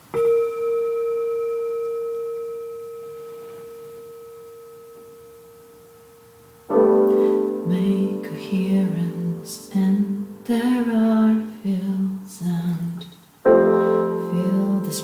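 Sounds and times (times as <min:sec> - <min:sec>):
bell ringing: 0:00.2 - 0:08.0
piano chord: 0:00.2 - 0:11.5, 0:13.5 - 0:15.0.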